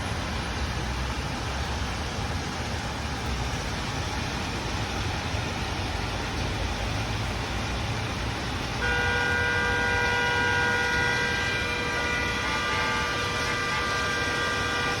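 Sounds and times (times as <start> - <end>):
road traffic: 0.0 - 15.0
vehicle horn long blast: 8.8 - 15.0.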